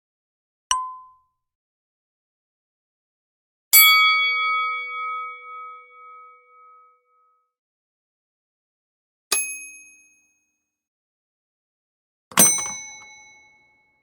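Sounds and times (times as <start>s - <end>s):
metal bell ringing: 12.3s - 13.6s.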